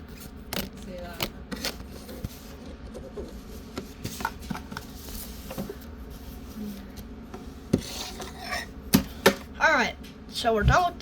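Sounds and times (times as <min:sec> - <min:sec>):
cards rubbing and tapping: 0:00.0 - 0:02.8.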